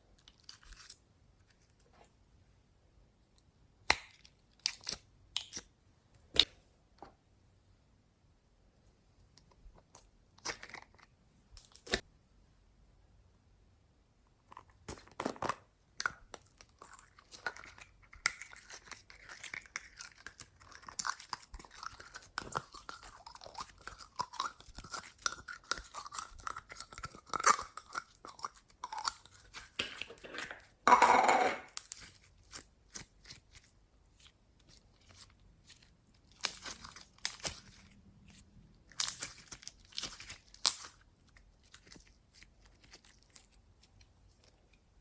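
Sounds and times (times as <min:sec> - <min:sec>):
slime crackling and popping: 0:34.7 - 0:44.6.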